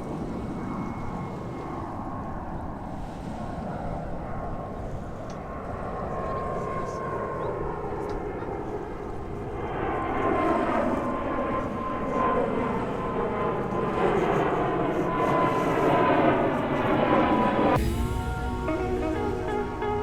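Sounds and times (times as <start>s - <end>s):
jet airliner flying overhead: 0.0s - 20.0s.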